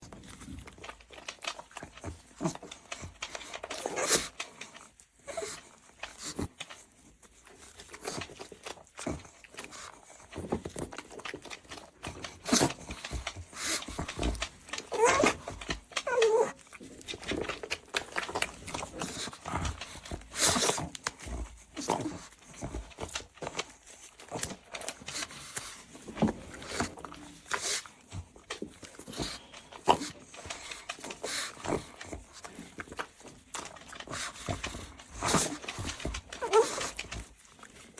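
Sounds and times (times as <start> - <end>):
dog wavering vocal sounds: 7.8 - 23.6, 26.5 - 37.8.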